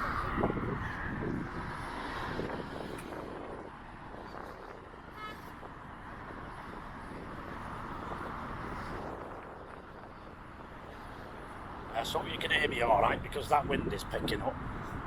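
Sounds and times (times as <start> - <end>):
passing road traffic: 0.0 - 15.0
wind on microphone: 0.0 - 15.0.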